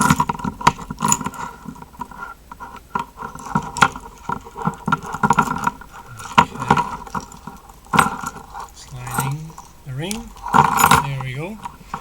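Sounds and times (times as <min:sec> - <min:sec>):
keys jangling and clicking: 0:06.2 - 0:11.0.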